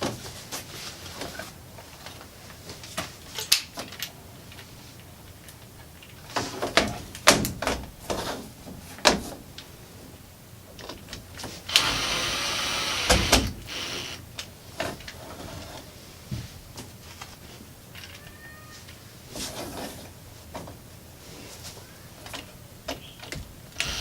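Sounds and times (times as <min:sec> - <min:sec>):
power screwdriver running: 0:11.7 - 0:14.2, 0:23.8 - 0:24.0.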